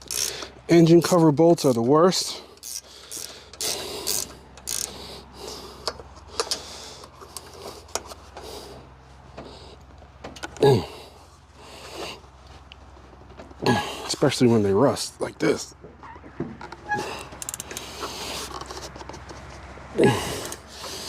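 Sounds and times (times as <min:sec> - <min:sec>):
ratchet wrench clicking: 0:00.0 - 0:01.8, 0:02.6 - 0:08.1, 0:17.0 - 0:18.8, 0:20.3 - 0:21.0.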